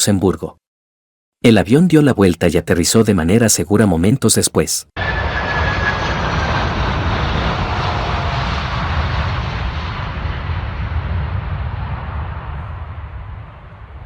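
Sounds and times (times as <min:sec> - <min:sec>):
jet engine whines: 0:05.0 - 0:14.0
jet engines rushing: 0:05.0 - 0:14.0.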